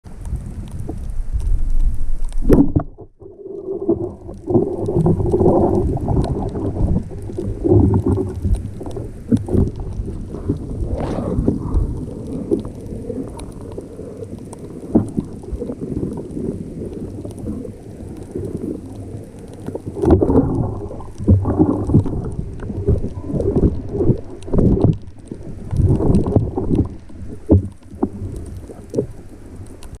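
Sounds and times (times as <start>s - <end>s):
low rumbling underwater movement: 0.0s - 30.0s
water swishing surges: 0.1s - 30.0s
short knocks underwater: 2.4s - 12.5s, 20.0s - 25.1s, 25.7s - 29.1s.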